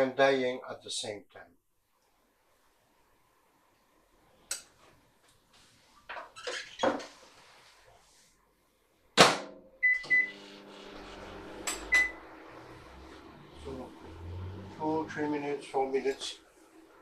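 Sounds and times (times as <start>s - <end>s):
short keypad beeps: 9.8s - 10.3s
microwave oven humming: 9.8s - 15.2s.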